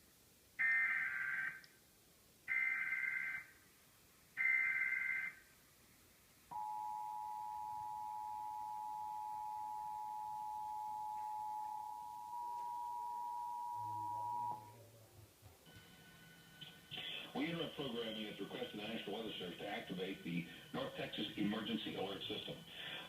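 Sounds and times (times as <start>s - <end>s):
two-tone attention signal: 6.5s - 14.7s.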